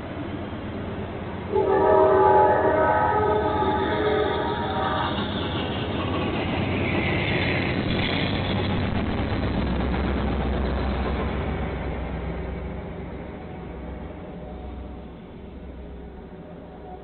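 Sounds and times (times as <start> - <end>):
diesel locomotive engine rumbling: 0.0 - 17.0.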